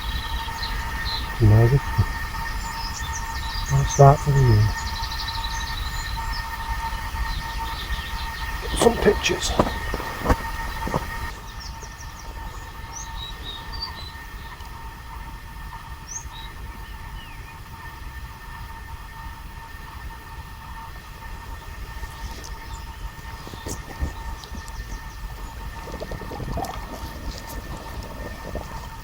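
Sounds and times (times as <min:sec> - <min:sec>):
bird chirps: 0:00.0 - 0:18.9, 0:20.8 - 0:29.0
constant hum: 0:00.0 - 0:29.0.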